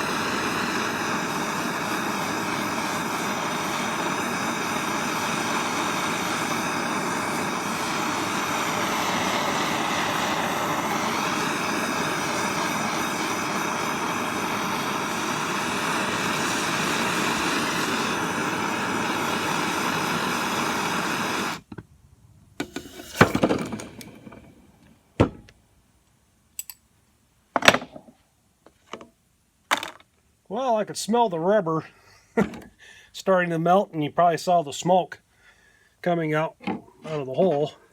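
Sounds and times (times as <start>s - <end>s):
torch roaring hiss: 0.0s - 21.7s, 22.6s - 24.9s.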